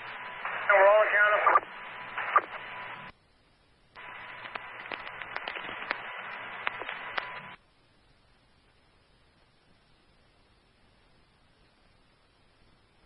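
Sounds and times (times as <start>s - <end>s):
radio hiss: 0.0s - 3.2s, 3.9s - 7.6s
crackling clicks: 3.9s - 7.6s
faint steady tone: 6.0s - 13.0s.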